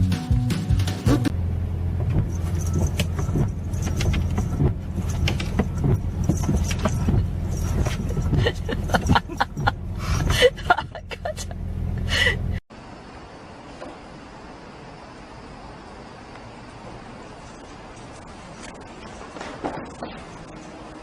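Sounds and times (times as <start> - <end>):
engine droning: 1.0 - 21.0
light clicks and jangles: 2.3 - 10.8.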